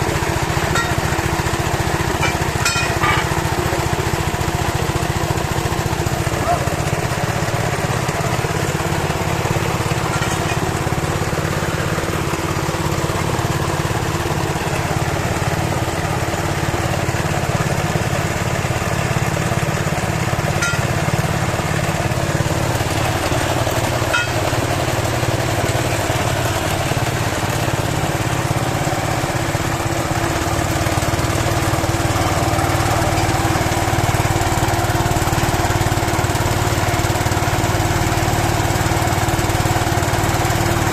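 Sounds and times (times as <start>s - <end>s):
water pump engine running: 0.0s - 40.9s.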